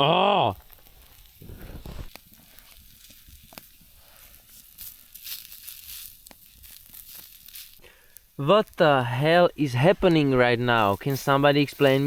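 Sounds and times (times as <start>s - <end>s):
sharp pops: 0.0s - 3.8s
food sizzling and crackling: 0.0s - 12.0s
rustle of movement: 0.6s - 8.1s, 9.9s - 12.0s.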